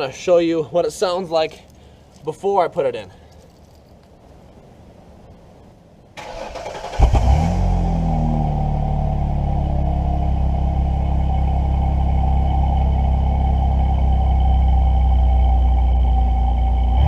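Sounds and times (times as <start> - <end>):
car engine starting and idling: 6.2 - 17.0.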